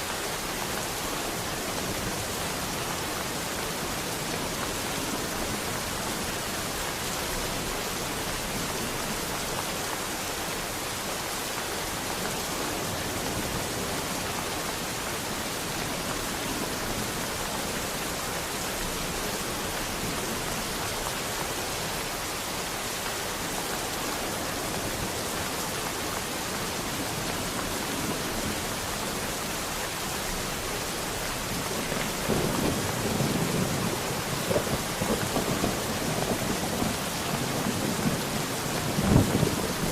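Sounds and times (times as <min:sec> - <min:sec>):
steady rain falling: 0:00.0 - 0:39.9
low rumble of thunder: 0:31.4 - 0:39.9.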